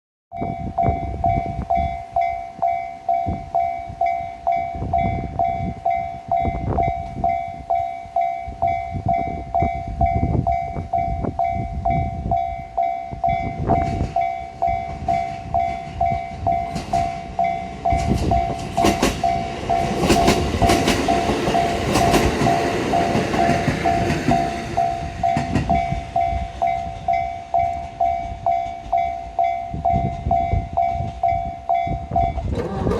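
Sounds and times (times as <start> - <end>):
train wheels clacking: 13.7 - 31.4, 32.2 - 32.9
level crossing bell ringing: 21.0 - 32.5.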